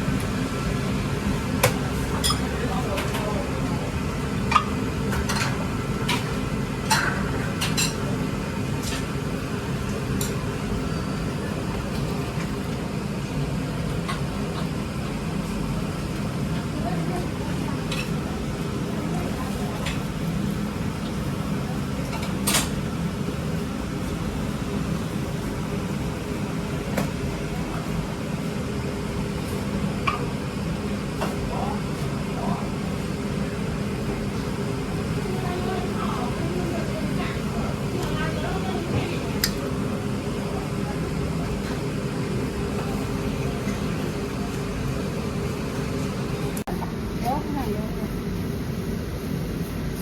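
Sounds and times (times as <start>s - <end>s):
low background hum: 0.0s - 50.0s
dishes and utensils clinking: 2.2s - 3.2s.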